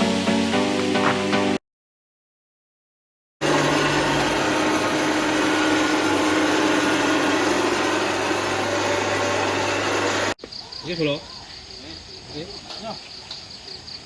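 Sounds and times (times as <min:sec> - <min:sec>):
milling machine whirring: 0:03.4 - 0:10.4.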